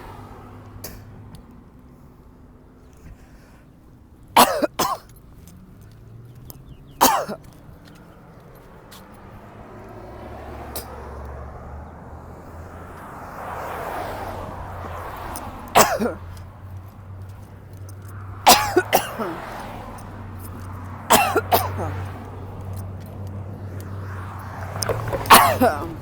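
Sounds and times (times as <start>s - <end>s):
woman coughing: 4.4s - 5.1s, 7.0s - 7.5s, 15.8s - 16.3s, 18.5s - 19.5s, 21.1s - 22.1s, 25.3s - 26.0s.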